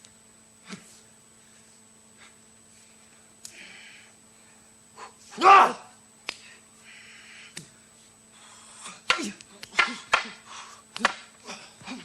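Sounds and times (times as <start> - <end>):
breathy exhalations: 3.5 - 5.2
person grunting: 5.4 - 5.9.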